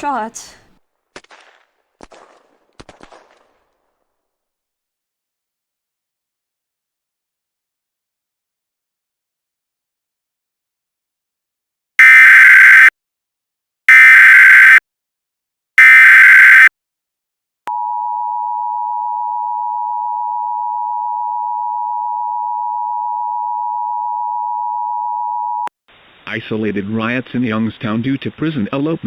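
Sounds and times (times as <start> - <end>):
data burst tones: 15.8 - 16.7.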